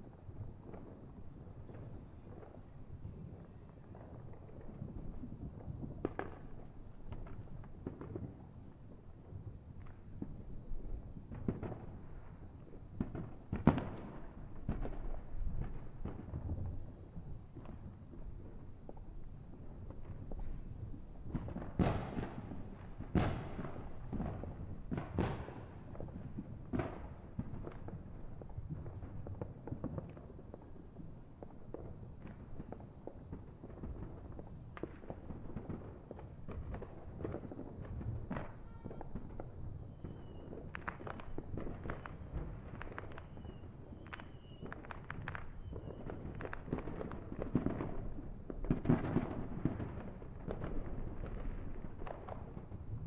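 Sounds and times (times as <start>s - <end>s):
fireworks popping and banging: 0.6s - 8.6s, 9.8s - 16.9s, 17.5s - 53.0s.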